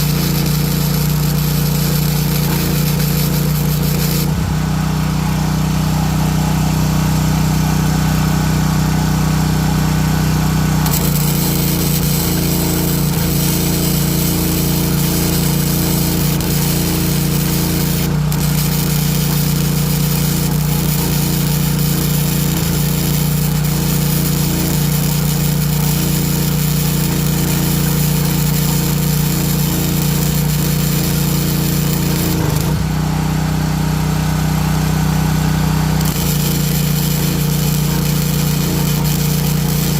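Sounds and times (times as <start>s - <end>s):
welding arc hissing: 0.0s - 4.5s, 10.8s - 32.9s, 35.9s - 39.9s
generator running: 0.0s - 39.9s.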